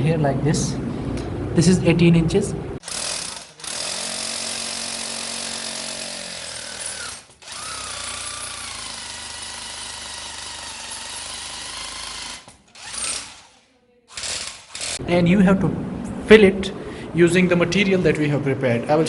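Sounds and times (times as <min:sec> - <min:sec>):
power drill drilling: 0:02.8 - 0:15.0.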